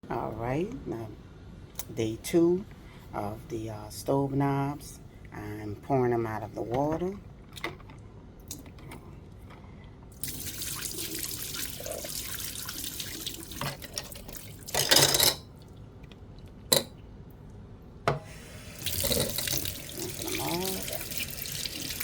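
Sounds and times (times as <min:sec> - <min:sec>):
water pouring into a sink: 0:10.2 - 0:14.9, 0:18.7 - 0:22.0.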